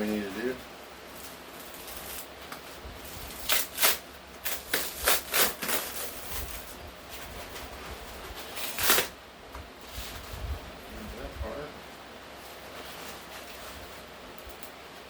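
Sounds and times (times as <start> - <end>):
packing material rustling: 0.0 - 9.2.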